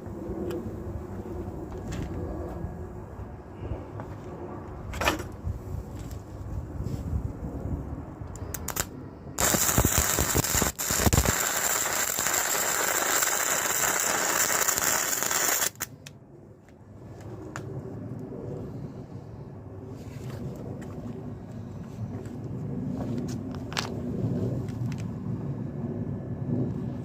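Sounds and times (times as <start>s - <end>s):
low rumble: 0.0s - 12.7s, 16.2s - 27.0s
welder arc crackling and sizzling: 8.5s - 15.9s.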